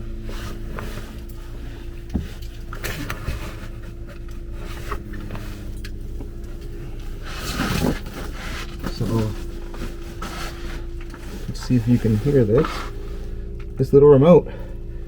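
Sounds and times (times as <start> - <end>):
low mechanical hum: 0.0 - 15.0.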